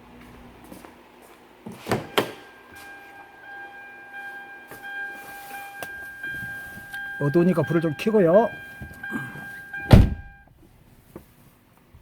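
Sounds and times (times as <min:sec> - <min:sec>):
high electronic tone: 0:02.2 - 0:10.4.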